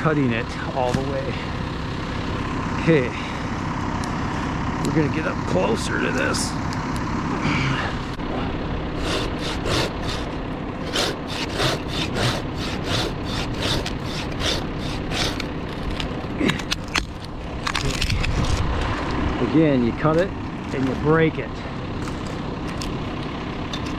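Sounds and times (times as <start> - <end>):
hand saw cutting branch: 9.0 - 16.9
wood cracks and scrapes: 13.6 - 19.0.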